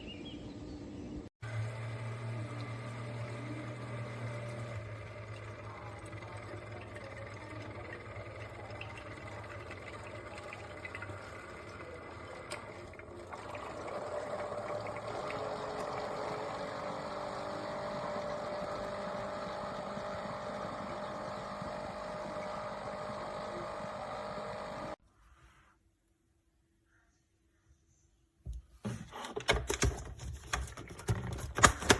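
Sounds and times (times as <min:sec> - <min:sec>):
coffee maker pump humming: 0:01.4 - 0:25.0, 0:28.5 - 0:31.9
hot water streaming into cup: 0:02.3 - 0:25.0.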